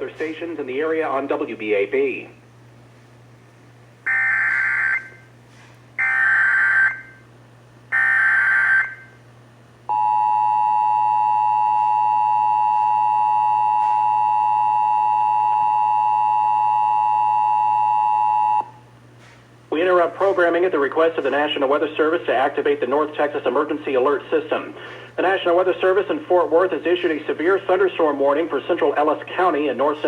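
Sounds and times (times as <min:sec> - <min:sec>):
two-tone attention signal: 0:09.9 - 0:18.7.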